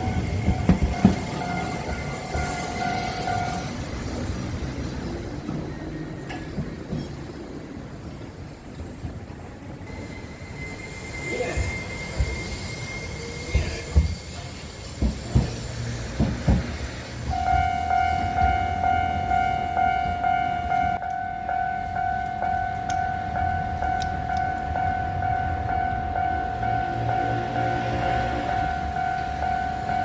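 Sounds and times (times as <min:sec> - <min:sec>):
level crossing warning bell: 0:00.0 - 0:04.3, 0:17.2 - 0:30.0
tram wheels clunking over rail joints: 0:00.0 - 0:30.0.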